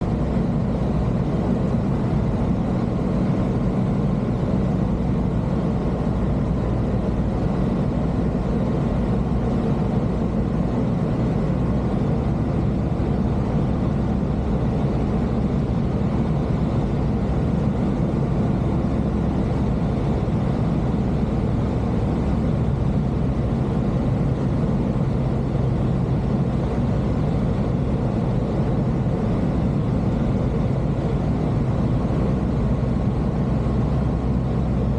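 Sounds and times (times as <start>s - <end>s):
aircraft engine and propeller drone: 0.0s - 34.9s.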